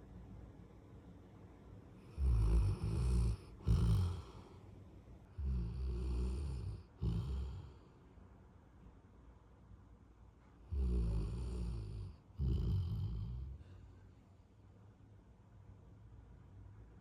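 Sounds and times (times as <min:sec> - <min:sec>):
dog snoring: 0:02.1 - 0:04.5, 0:05.4 - 0:07.8, 0:10.7 - 0:13.7.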